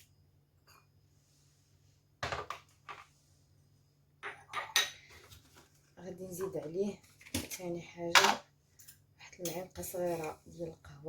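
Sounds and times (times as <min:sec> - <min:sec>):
bowl and utensils clinking: 0:04.2 - 0:05.1.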